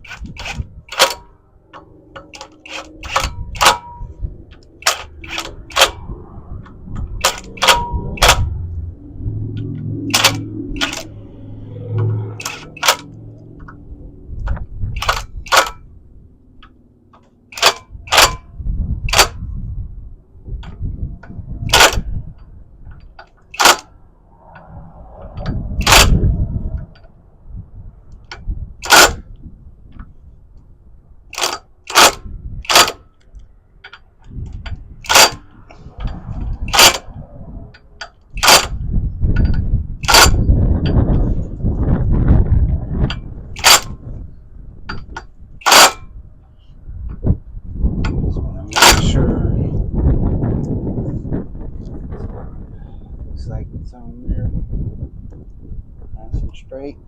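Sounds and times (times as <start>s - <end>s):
tools clicking and knocking: 0.0s - 8.8s, 9.5s - 13.8s, 14.4s - 15.9s, 16.6s - 19.4s, 20.6s - 27.1s, 28.1s - 30.2s, 31.3s - 37.1s, 37.7s - 41.5s, 43.0s - 44.2s, 44.9s - 46.2s, 47.9s - 49.3s
dull rumbles of handling: 0.0s - 57.0s.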